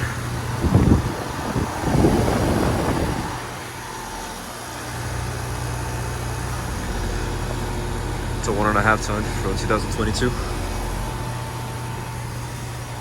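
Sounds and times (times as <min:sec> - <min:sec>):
loud rush of noise: 0:00.0 - 0:05.0
heat pump compressor and fan hum: 0:00.0 - 0:13.0.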